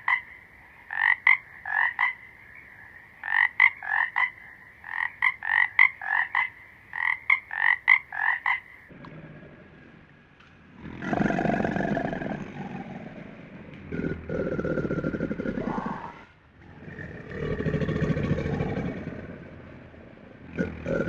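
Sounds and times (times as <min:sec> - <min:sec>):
frog croaking: 0:00.0 - 0:09.0.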